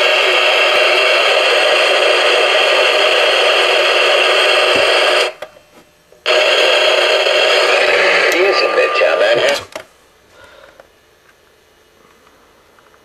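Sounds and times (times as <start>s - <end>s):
radio static hiss: 0.0s - 5.4s, 6.2s - 9.8s.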